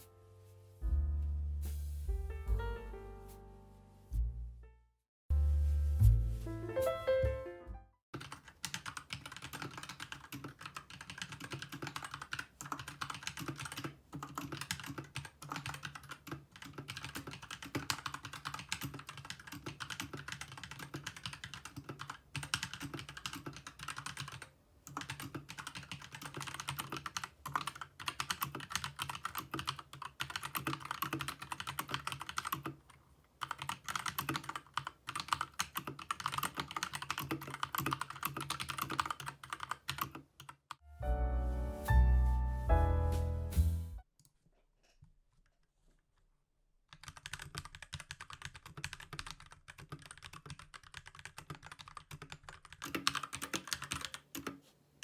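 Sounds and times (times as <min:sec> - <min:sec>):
mechanical keyboard typing: 0:08.2 - 0:40.8, 0:46.9 - 0:54.6.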